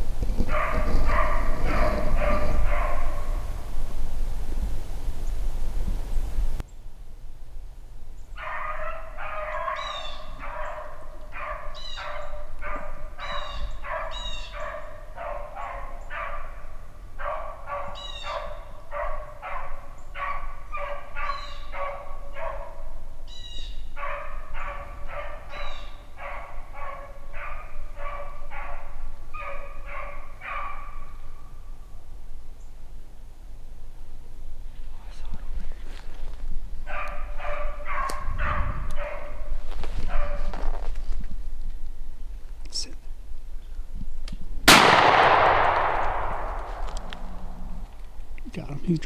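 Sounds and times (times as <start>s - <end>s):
puppy baying barks: 0.1s - 3.6s, 8.4s - 23.0s, 24.0s - 31.2s, 36.8s - 40.8s.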